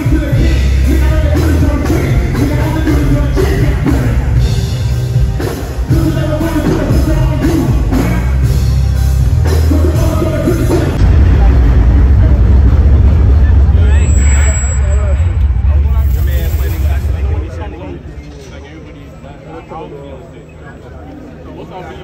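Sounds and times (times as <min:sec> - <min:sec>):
person singing: 0:00.0 - 0:04.7
heavy bass beat: 0:00.0 - 0:18.0.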